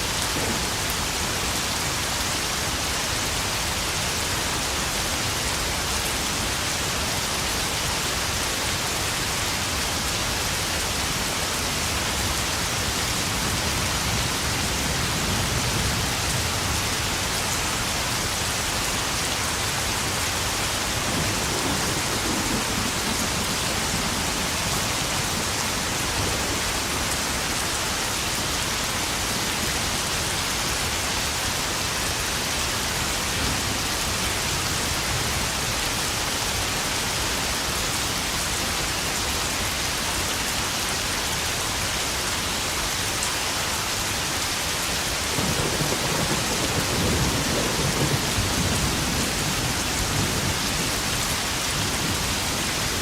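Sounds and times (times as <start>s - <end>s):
heavy rain pattering on puddles: 0.0s - 53.0s
thunder rumbling: 20.8s - 27.8s, 45.3s - 53.0s.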